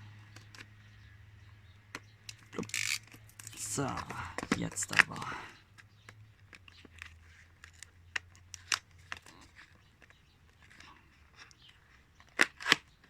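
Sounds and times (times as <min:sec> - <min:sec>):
sharp clicks from box: 0:00.2 - 0:00.8, 0:01.9 - 0:13.0
packaging being opened by hand: 0:02.3 - 0:05.3.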